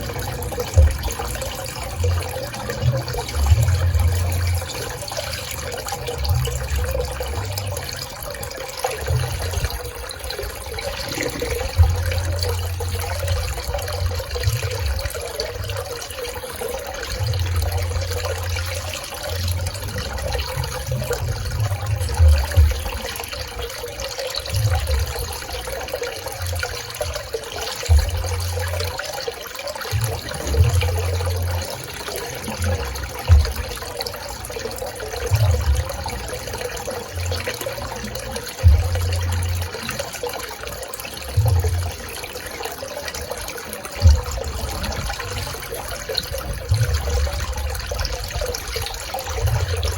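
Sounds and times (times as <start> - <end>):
pool water running and splashing: 0.0 - 49.9
deep low rumbles: 10.8 - 15.9.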